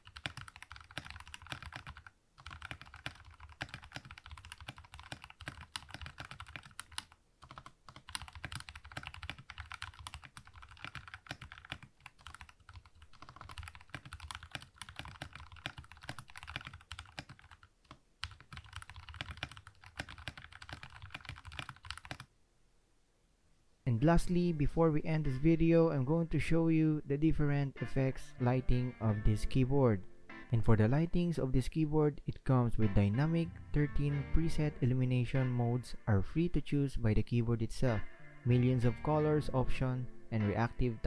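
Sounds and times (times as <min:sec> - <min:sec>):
mechanical keyboard typing: 0:00.0 - 0:22.3.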